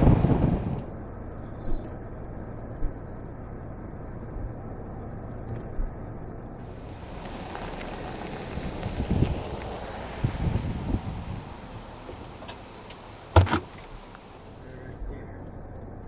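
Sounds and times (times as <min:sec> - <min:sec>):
engine and road hum: 0:00.0 - 0:16.0
small knocks: 0:12.0 - 0:14.3.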